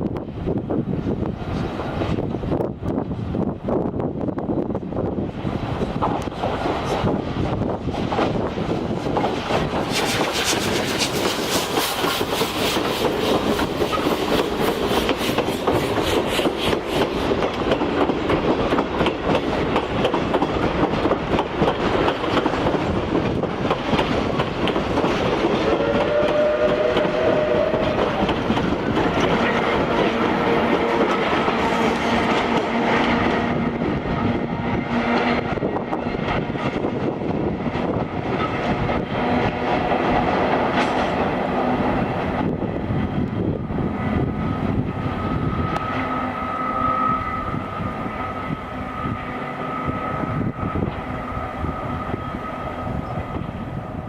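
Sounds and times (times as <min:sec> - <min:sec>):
wheels clacking over rail joints: 0:08.0 - 0:33.7
steam locomotive exhaust chuffs: 0:09.0 - 0:22.8, 0:23.6 - 0:35.9
locomotive whistle: 0:25.6 - 0:28.3, 0:45.2 - 0:53.2.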